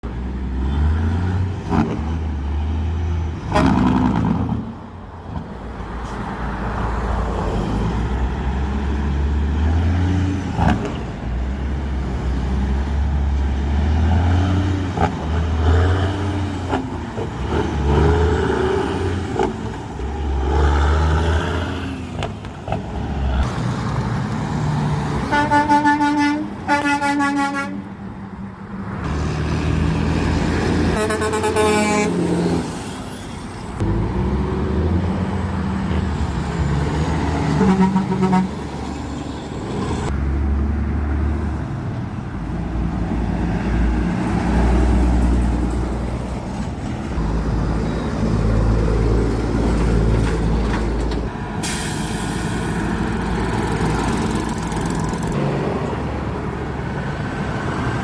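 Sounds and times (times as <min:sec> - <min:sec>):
engine revving: 0:13.4 - 0:22.3
vehicle horn blasts: 0:25.3 - 0:27.8, 0:31.0 - 0:32.2, 0:37.6 - 0:38.5.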